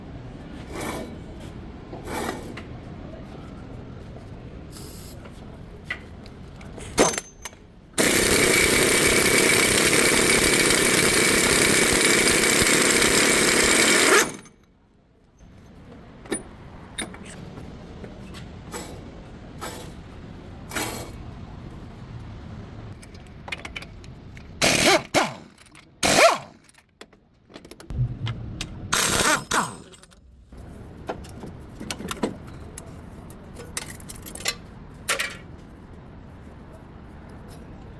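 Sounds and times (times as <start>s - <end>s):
power tool running: 8.0s - 14.5s, 24.6s - 26.6s, 28.9s - 29.9s.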